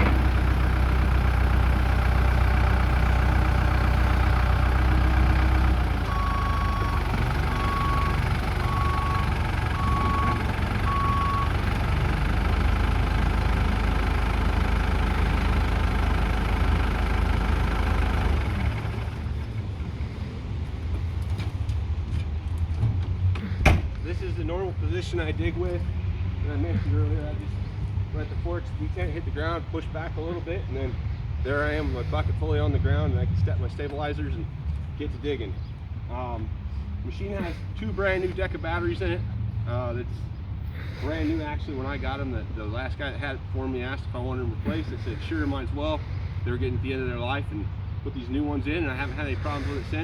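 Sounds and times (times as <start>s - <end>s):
diesel engine running: 0.0s - 50.0s
back-up alarm beeping: 6.1s - 11.5s.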